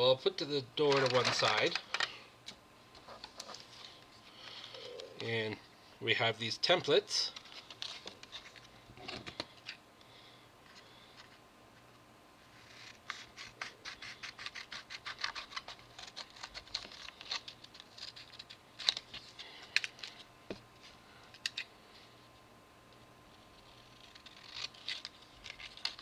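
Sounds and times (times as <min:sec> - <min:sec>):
scissors snipping paper: 0:00.9 - 0:02.1, 0:12.6 - 0:19.2, 0:23.6 - 0:26.0.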